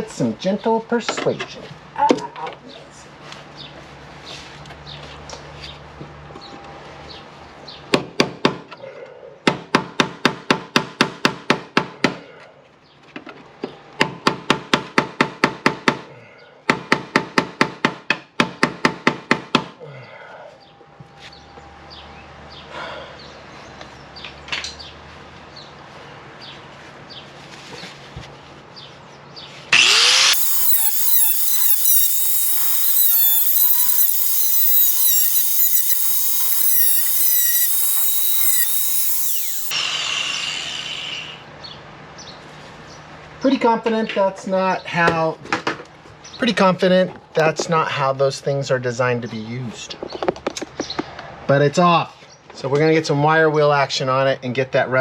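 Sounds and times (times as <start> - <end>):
loud power tool running: 29.8 - 41.2.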